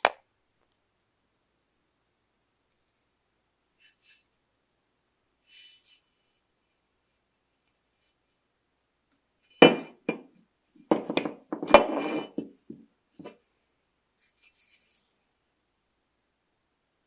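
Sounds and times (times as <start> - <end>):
metal tools clinking on hard surface: 9.6 - 10.2, 10.9 - 12.5.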